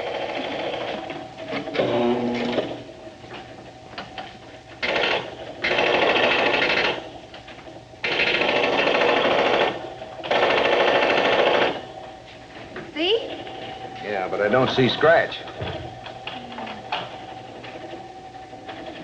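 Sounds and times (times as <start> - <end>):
arcade machine-gun bursts: 4.8 - 7.1, 8.0 - 11.9.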